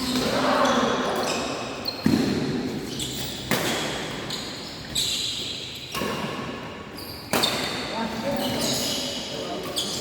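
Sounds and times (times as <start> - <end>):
rackets hitting shuttlecock: 2.0 - 4.3, 7.3 - 7.8
shoe squeaks on court floor: 2.8 - 6.0, 6.9 - 10.0.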